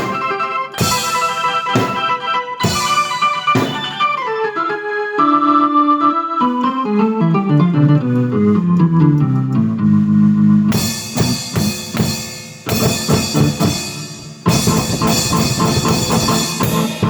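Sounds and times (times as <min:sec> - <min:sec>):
snare and bass drum strokes: 0:00.0 - 0:04.2, 0:08.0 - 0:17.0
keyboard chords: 0:00.0 - 0:17.0.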